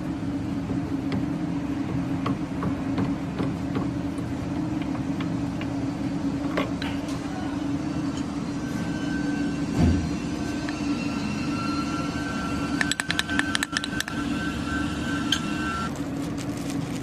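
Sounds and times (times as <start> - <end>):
faint high whine: 5.8 - 15.9.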